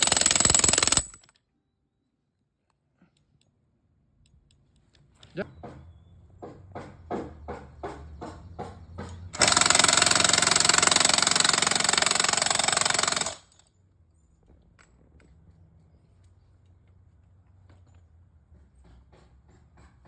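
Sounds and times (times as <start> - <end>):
impact wrench hammering: 9.4 - 13.4.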